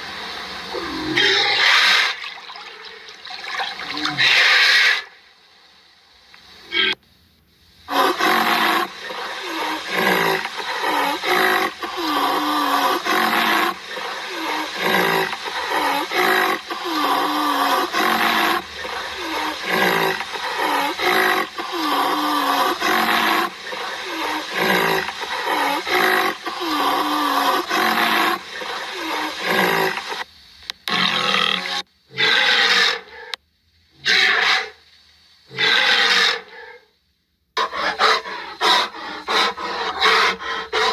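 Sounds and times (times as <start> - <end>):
large animal roaring: 0.7 - 1.9, 7.9 - 30.1.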